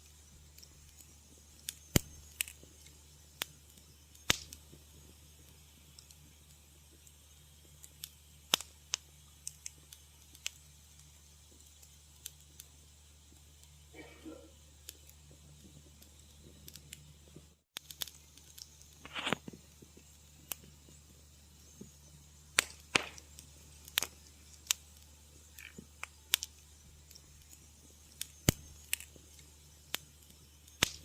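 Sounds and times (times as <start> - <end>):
faint low hum: 0.0 - 31.0
wood fire crackling: 0.0 - 31.0.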